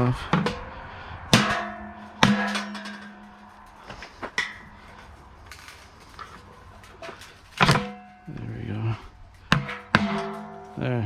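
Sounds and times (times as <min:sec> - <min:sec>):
drum ringing with steady tone: 0:01.3 - 0:03.6, 0:07.6 - 0:08.5, 0:09.5 - 0:11.0
metal clanks on dryer drum: 0:09.5 - 0:10.8.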